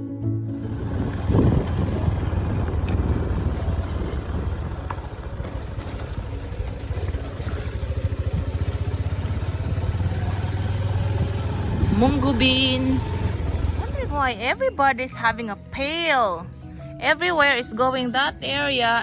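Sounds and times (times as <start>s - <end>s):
vehicle engine running: 0.5s - 14.5s.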